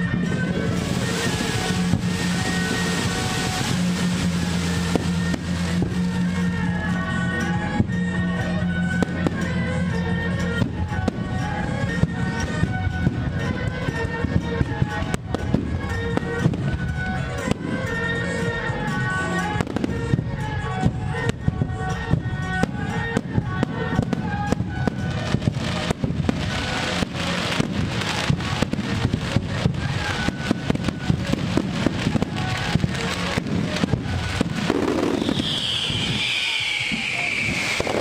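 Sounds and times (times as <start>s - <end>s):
fireworks and firecrackers banging: 0.0s - 38.0s
music: 0.0s - 38.0s
high falling whistle: 35.0s - 38.0s.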